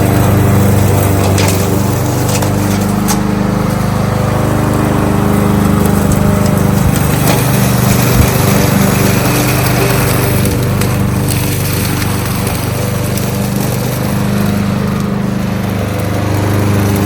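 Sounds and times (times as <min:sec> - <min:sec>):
lawnmower engine running: 0:00.0 - 0:17.0.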